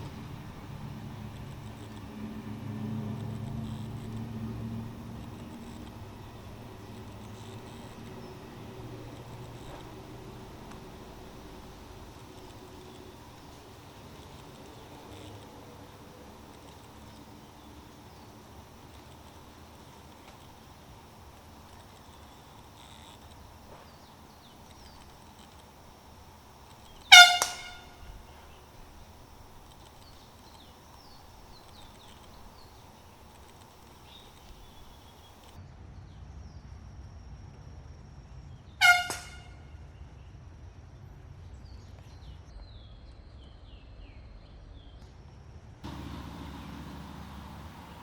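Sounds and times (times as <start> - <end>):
handheld air horn blasts: 26.9 - 28.5, 38.8 - 39.6.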